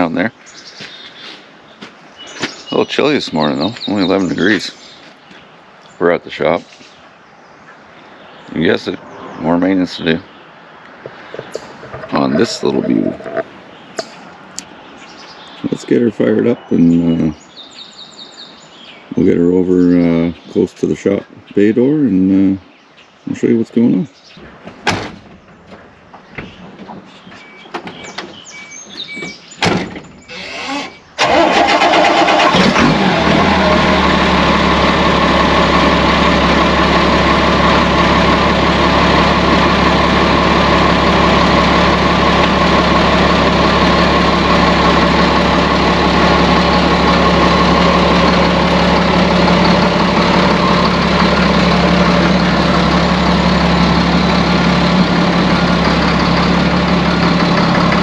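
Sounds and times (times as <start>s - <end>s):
engine cranking and idling: 11.4s - 13.5s, 30.2s - 58.0s.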